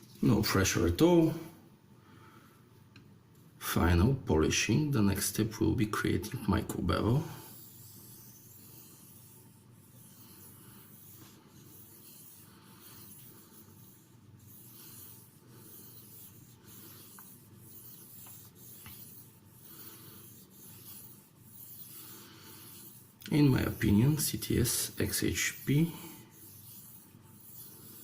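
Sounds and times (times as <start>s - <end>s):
knife scraping on whetstone: 7.4s - 28.0s.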